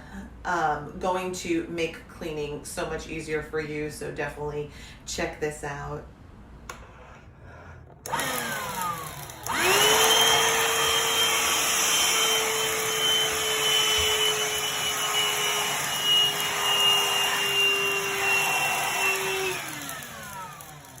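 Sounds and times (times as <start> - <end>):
handheld vacuum motor whining: 8.0 - 21.0.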